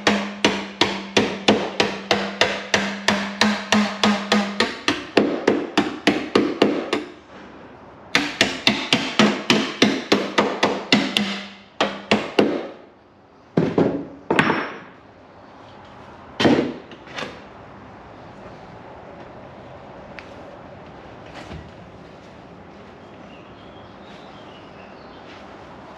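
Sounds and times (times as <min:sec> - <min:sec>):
hammer striking metal: 0:00.0 - 0:07.1.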